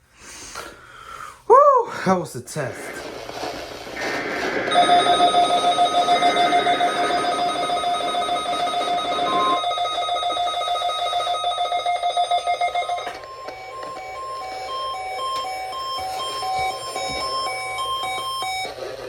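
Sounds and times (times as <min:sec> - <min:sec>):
pulsing alarm tone: 0:04.0 - 0:18.7.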